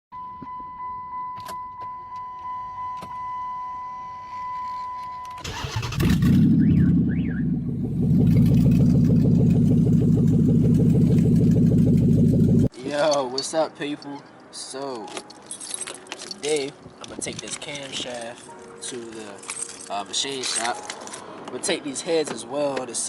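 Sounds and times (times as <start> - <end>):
car warning chime beeping: 0.2 - 5.7
car engine starting and idling: 5.4 - 12.7.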